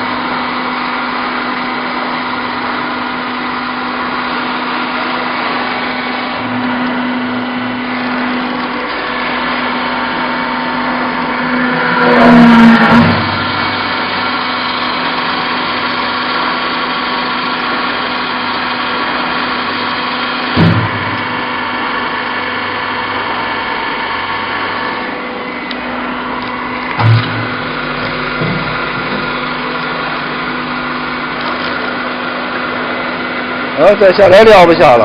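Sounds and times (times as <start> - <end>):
machine humming: 0.0 - 35.0
short mechanical knocks: 20.5 - 21.6, 26.4 - 31.8.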